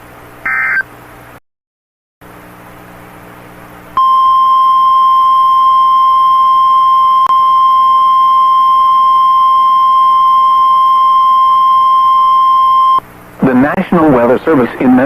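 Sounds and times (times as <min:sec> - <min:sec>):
faint hum: 0:00.0 - 0:01.4, 0:02.2 - 0:15.0
steady alarm beep: 0:00.5 - 0:00.8, 0:04.0 - 0:13.0.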